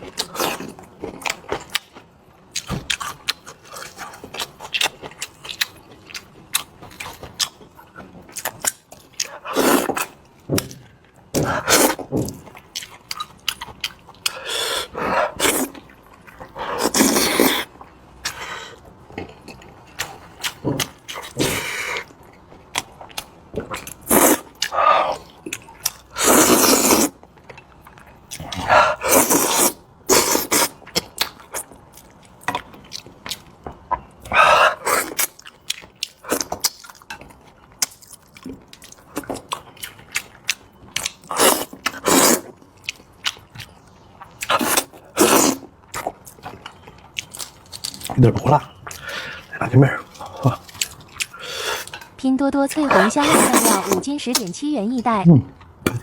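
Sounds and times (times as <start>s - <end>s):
noisy eating bursts: 0.0s - 10.7s, 11.4s - 33.6s, 34.2s - 56.0s
wet chewing and lip smacks: 35.0s - 52.2s.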